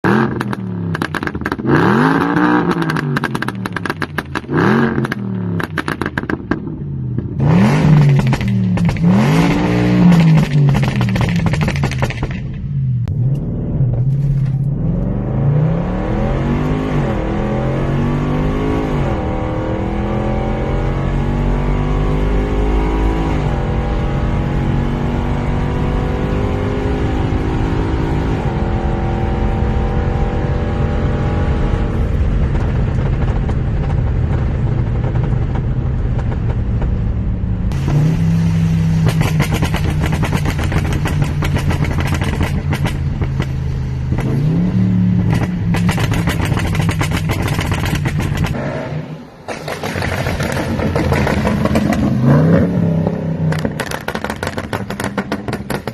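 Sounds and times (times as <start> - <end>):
exhaust crackling: 0.0 - 21.6, 29.4 - 55.9
car engine accelerating hard: 13.0 - 55.9.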